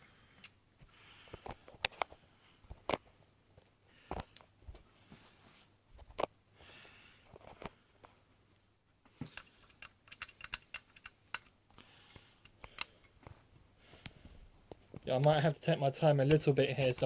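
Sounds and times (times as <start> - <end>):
screwdriver clicks and taps: 9.2 - 11.5.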